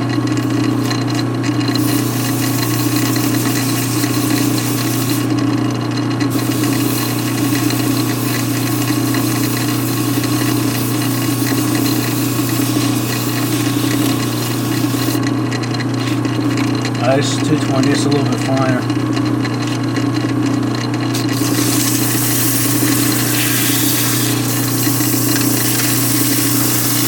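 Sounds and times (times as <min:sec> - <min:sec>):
metal lathe humming: 0:00.0 - 0:19.7, 0:20.4 - 0:27.0
sandpaper scratchy hiss: 0:06.4 - 0:15.2, 0:21.4 - 0:27.0.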